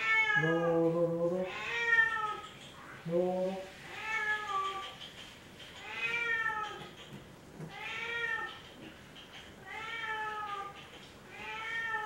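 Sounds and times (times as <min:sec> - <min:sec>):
cat meowing: 0:01.5 - 0:02.5, 0:05.8 - 0:06.9, 0:07.7 - 0:08.6, 0:09.6 - 0:12.0.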